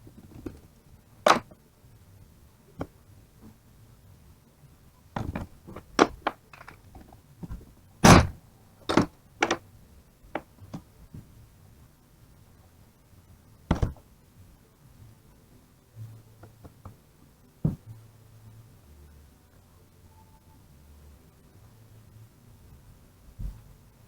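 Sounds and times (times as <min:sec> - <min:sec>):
tools and metal parts knocking: 0:01.3 - 0:01.5, 0:05.2 - 0:06.8, 0:08.1 - 0:09.6.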